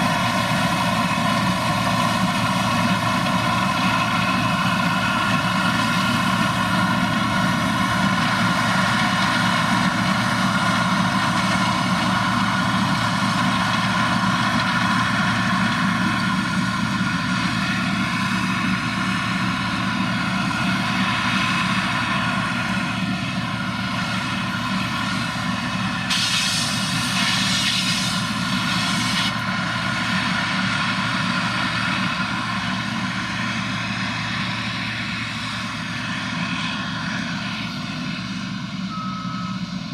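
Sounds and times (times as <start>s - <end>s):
diesel machinery engine drone: 0.0s - 39.9s
brief hiss: 26.1s - 29.4s.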